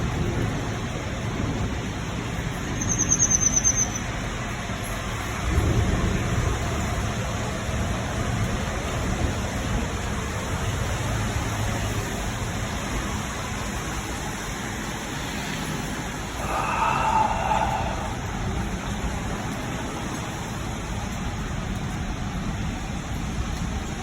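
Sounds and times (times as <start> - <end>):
distant thunder rumbling: 5.4 - 10.2, 16.3 - 20.4
steady hiss: 12.6 - 22.7.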